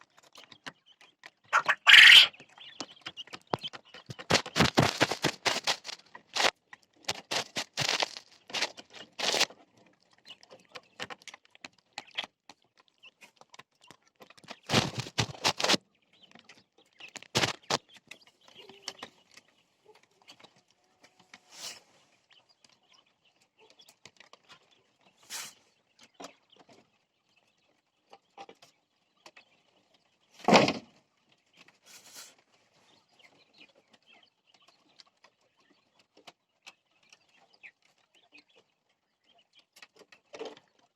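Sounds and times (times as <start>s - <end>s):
quail scratching and knocking: 0.0s - 40.9s
faint quail calls: 1.5s - 2.8s.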